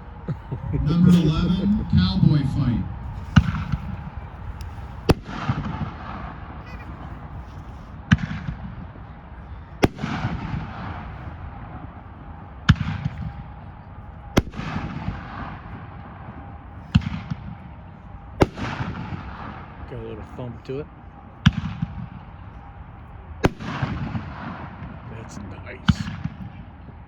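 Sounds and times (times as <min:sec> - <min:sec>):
firework bangs: 0:00.3 - 0:06.6, 0:09.8 - 0:11.9, 0:14.4 - 0:15.8, 0:18.4 - 0:19.8, 0:23.4 - 0:25.1.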